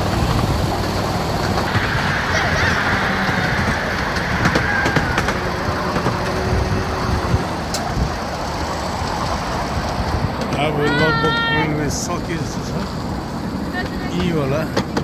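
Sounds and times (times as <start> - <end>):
miniature train rumbling on track: 0.0 - 15.0
sharp clicks: 0.1 - 10.6.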